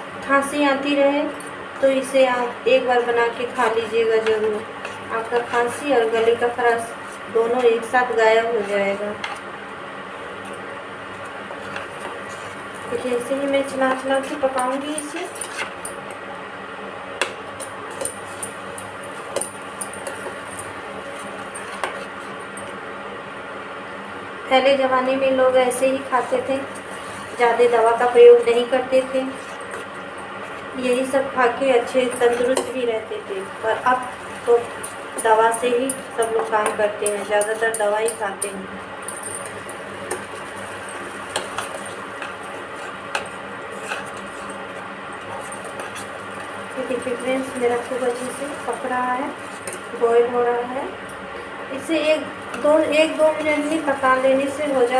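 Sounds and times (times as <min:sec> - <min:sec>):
steady cooking hiss: 0:00.0 - 0:54.9
spoon scraping and clinking in pan: 0:17.6 - 0:22.1, 0:39.0 - 0:50.1.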